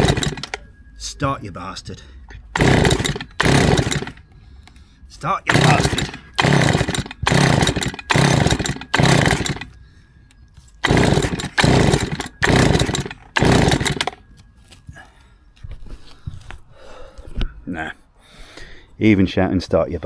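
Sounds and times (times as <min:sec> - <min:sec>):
engine turning over: 0:00.0 - 0:00.6, 0:02.5 - 0:04.2, 0:05.4 - 0:09.8, 0:10.8 - 0:14.2
recoil starter tugs: 0:00.0 - 0:00.6, 0:02.5 - 0:04.2, 0:05.4 - 0:09.8, 0:10.8 - 0:14.2.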